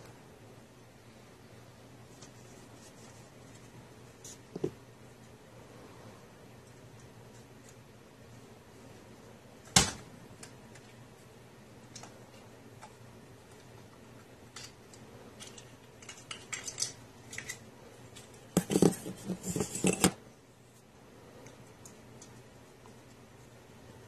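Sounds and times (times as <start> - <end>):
small hard objects clicking: 14.5 - 17.6.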